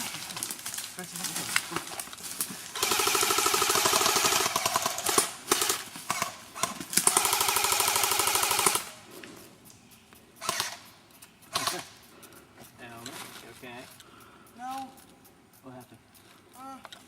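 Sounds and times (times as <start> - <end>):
airsoft rifle firing bursts: 2.7 - 9.0, 10.4 - 10.9, 11.5 - 12.0.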